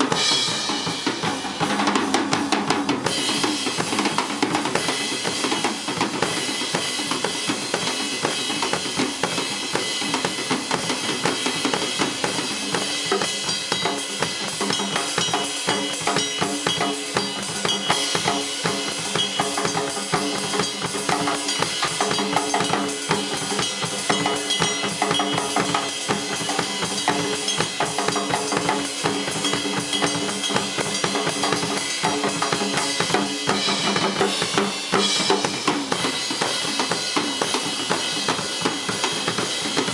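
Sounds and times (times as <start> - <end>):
drum kit solo: 0.0 - 39.9.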